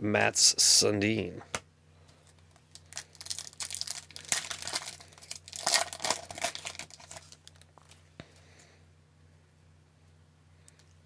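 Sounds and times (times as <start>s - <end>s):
plastic wrapper crinkling and tearing: 2.6s - 8.0s.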